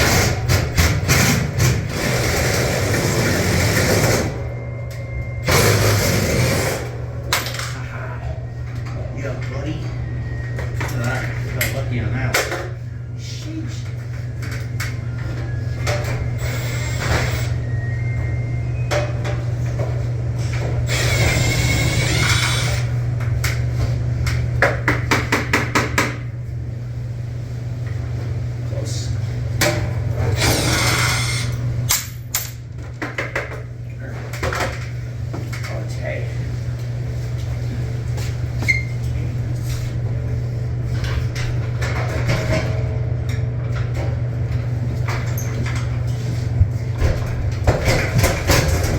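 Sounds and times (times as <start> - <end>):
low machine hum: 0.0 - 48.9
low hum: 3.6 - 24.4.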